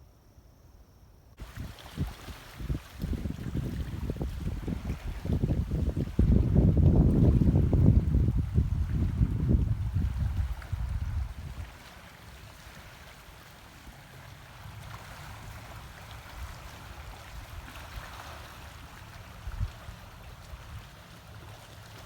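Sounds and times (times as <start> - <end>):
wind buffeting microphone: 1.4 - 11.8.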